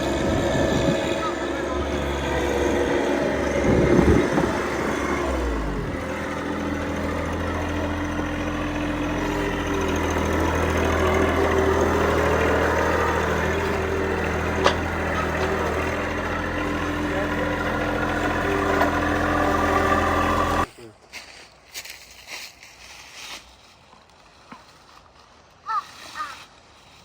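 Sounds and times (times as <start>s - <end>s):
vehicle engine running: 0.0s - 20.7s.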